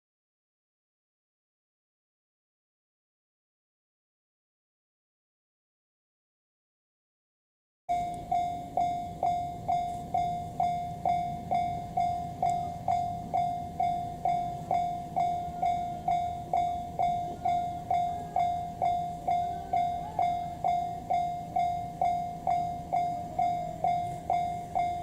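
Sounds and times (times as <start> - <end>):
level crossing warning bell: 7.9 - 25.0
steady low hum: 7.9 - 25.0.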